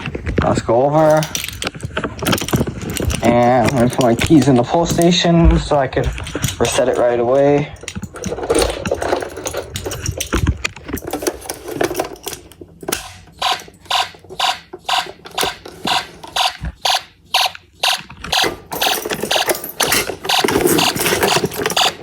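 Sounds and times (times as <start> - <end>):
handling clicks and rattles: 0.0 - 17.0, 17.6 - 22.0
pulsing buzzy alarm horn: 13.4 - 15.1.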